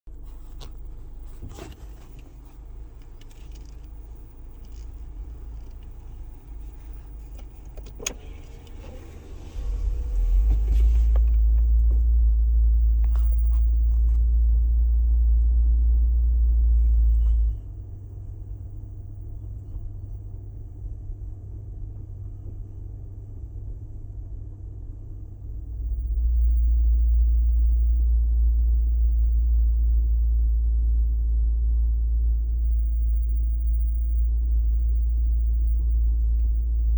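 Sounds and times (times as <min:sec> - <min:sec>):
vehicle deep drone: 0:00.0 - 0:36.9
faint clicks: 0:00.2 - 0:14.4.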